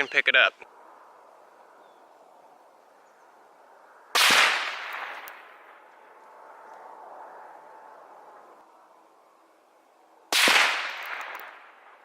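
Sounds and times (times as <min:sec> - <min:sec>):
rifle shot echoing: 0:04.1 - 0:05.8, 0:10.3 - 0:12.0.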